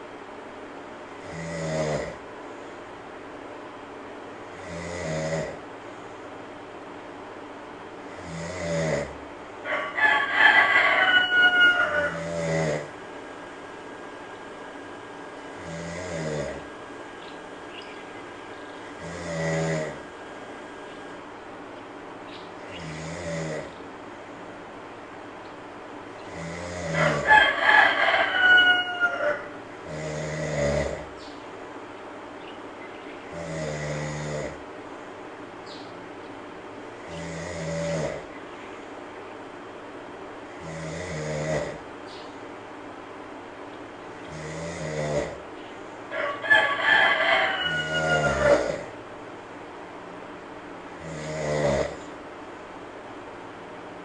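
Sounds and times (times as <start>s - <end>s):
monkey snoring: 1.1s - 2.3s, 4.4s - 5.7s, 8.1s - 9.2s, 12.1s - 13.1s, 15.3s - 16.9s, 18.8s - 21.2s, 22.6s - 23.8s, 26.2s - 27.3s, 29.8s - 31.2s, 33.3s - 34.7s, 37.0s - 38.3s, 40.5s - 41.9s, 44.2s - 45.5s, 47.8s - 49.0s, 51.0s - 52.2s
rooster crowing: 9.6s - 12.9s, 26.3s - 30.0s, 46.1s - 49.0s.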